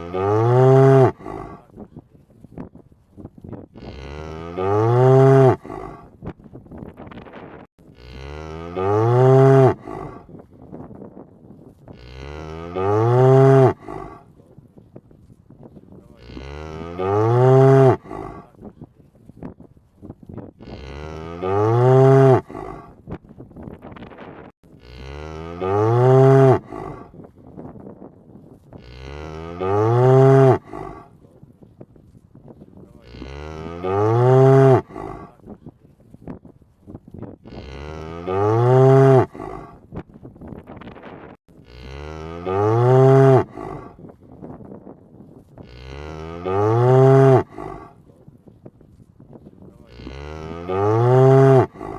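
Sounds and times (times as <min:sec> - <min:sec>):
cow mooing: 0:00.0 - 0:01.7, 0:03.8 - 0:06.1, 0:07.9 - 0:10.3, 0:11.9 - 0:14.2, 0:16.2 - 0:18.5, 0:20.6 - 0:23.0, 0:24.8 - 0:27.1, 0:28.8 - 0:31.1, 0:33.0 - 0:35.4, 0:37.5 - 0:39.8, 0:41.6 - 0:44.0, 0:45.6 - 0:48.0, 0:49.8 - 0:51.9.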